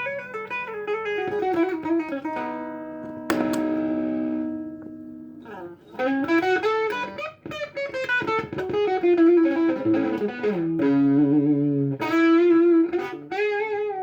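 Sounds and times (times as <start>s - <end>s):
overdriven electric guitar lead: 0.0s - 14.0s.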